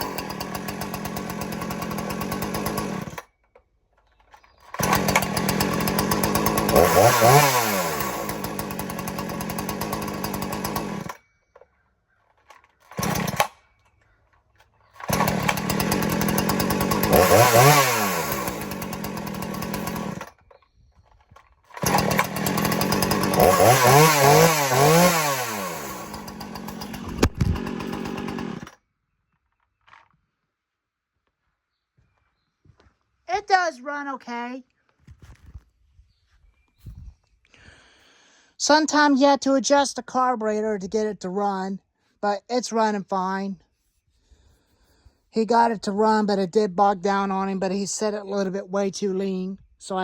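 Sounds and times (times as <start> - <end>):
chainsaw idling and revving: 0.0 - 3.3, 4.6 - 11.2, 12.4 - 13.6, 15.0 - 20.4, 21.7 - 28.8.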